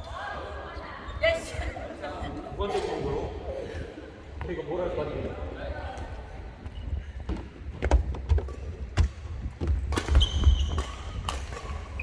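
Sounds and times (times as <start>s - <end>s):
sneakers squeaking on court floor: 9.0s - 12.0s
racket striking shuttlecock: 9.9s - 12.0s.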